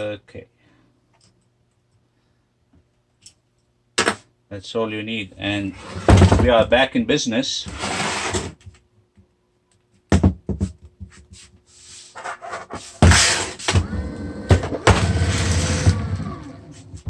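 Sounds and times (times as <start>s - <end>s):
electric motor whining: 13.7s - 17.0s.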